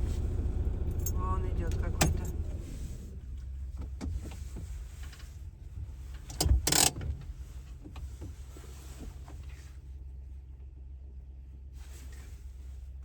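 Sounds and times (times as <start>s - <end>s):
low car hum: 0.0s - 11.6s.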